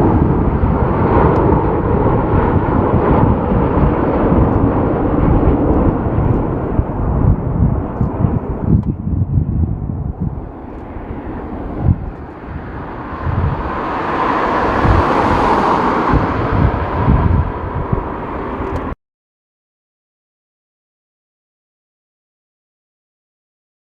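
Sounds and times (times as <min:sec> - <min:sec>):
jet airliner passing: 0:00.0 - 0:19.0
wind buffeting on microphone: 0:00.0 - 0:19.0.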